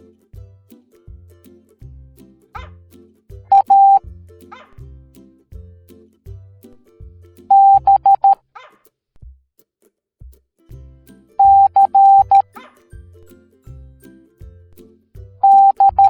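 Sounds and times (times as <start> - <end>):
background music with bass line: 0.0 - 8.2, 10.2 - 16.0
morse code tone beeps: 3.5 - 4.0, 7.5 - 8.4, 11.4 - 12.5, 15.4 - 16.0.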